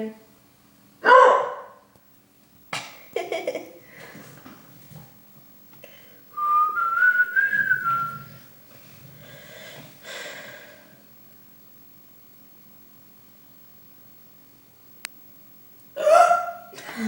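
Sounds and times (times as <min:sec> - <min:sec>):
person whistling: 0:06.4 - 0:08.3
faint breathy noise: 0:08.0 - 0:11.0.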